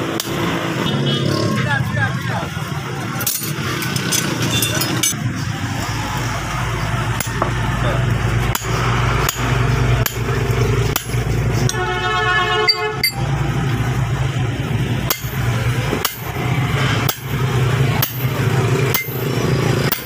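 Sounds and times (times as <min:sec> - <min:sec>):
hammer striking steel on anvil: 0:08.4 - 0:11.8, 0:12.7 - 0:13.3, 0:15.0 - 0:16.4, 0:17.0 - 0:20.0.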